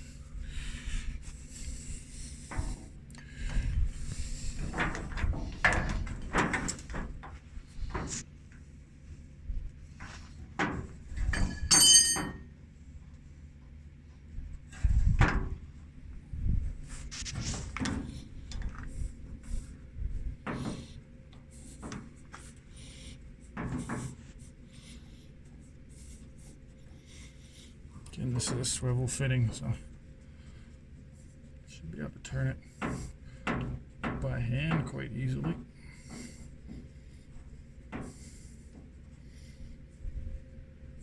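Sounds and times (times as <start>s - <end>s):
ringing metal clink: 11.4s - 12.5s.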